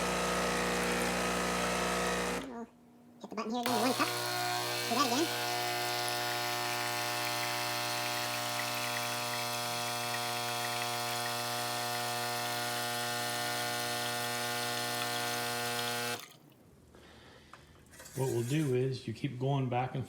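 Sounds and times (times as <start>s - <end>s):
espresso machine pump buzzing: 0.0s - 2.5s, 3.6s - 16.2s.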